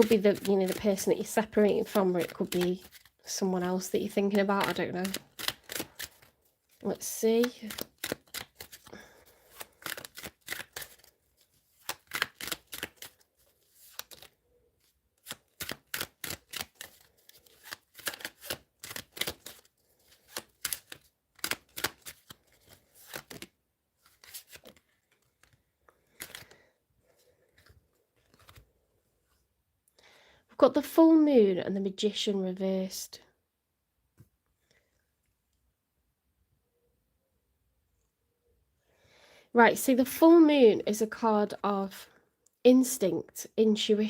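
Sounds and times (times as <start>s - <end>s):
cards being shuffled: 0.0s - 29.4s.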